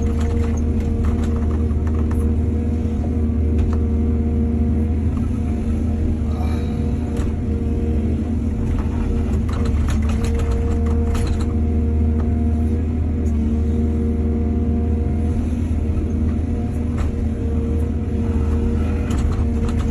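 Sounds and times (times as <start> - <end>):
knocks and clatter: 0.0 - 2.3, 8.6 - 11.6, 18.8 - 19.9
excavator diesel engine running: 0.0 - 19.9.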